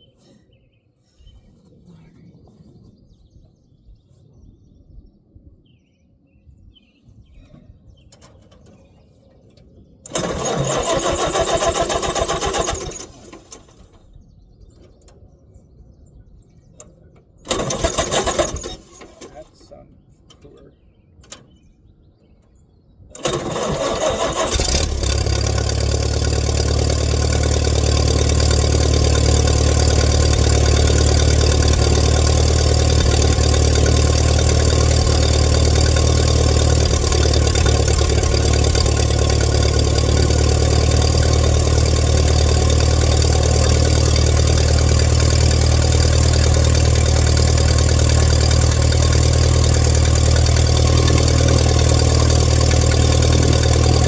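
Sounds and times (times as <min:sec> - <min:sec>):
tractor engine starting and running: 0:08.0 - 0:15.2, 0:16.8 - 0:19.7, 0:22.4 - 0:54.0.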